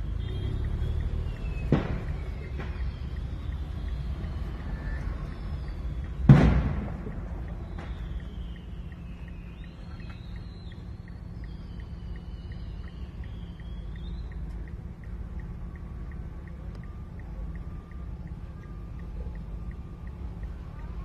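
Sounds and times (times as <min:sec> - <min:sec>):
steady low rumble: 0:01.3 - 0:21.0
fireworks explosion: 0:01.7 - 0:02.8, 0:06.2 - 0:08.0.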